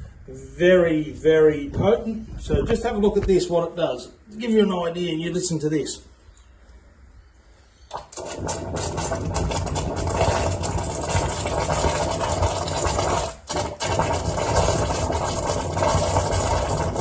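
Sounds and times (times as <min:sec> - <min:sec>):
drain cleaner fizzing and gurgling: 0:07.9 - 0:17.0.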